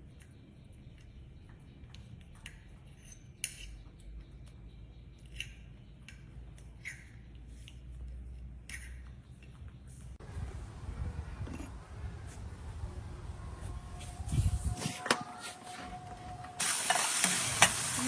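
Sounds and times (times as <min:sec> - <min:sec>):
steady low hum: 0:10.0 - 0:16.6.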